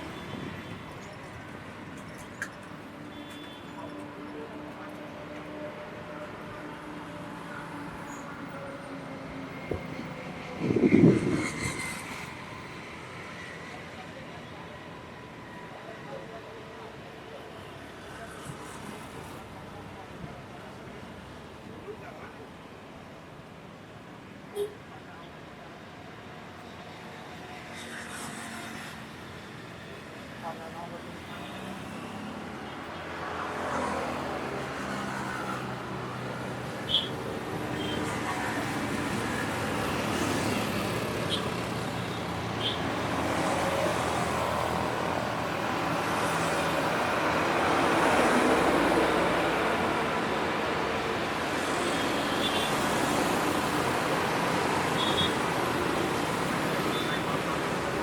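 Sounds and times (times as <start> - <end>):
vehicles passing: 0.0 - 15.0, 27.3 - 58.0
road traffic: 0.0 - 58.0.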